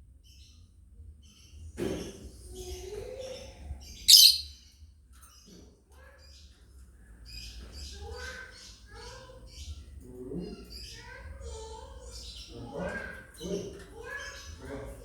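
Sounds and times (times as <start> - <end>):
lovebirds chirping: 3.9 - 4.6.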